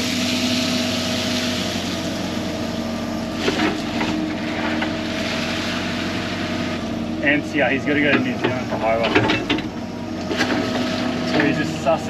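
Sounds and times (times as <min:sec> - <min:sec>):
diesel engine running: 0:00.0 - 0:12.0
clatter of knocks: 0:08.1 - 0:09.7.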